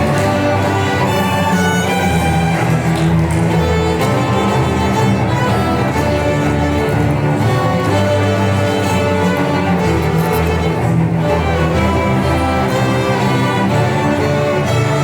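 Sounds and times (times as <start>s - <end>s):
string ensemble holding notes: 0.0s - 15.0s.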